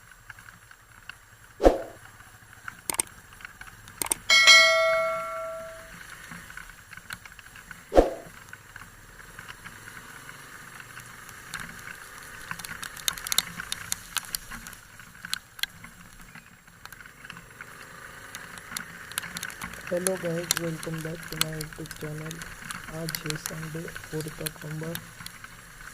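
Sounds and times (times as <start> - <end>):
irregular clicks and taps: 2.9 - 3.1, 3.9 - 5.9, 12.5 - 15.8, 18.3 - 25.4.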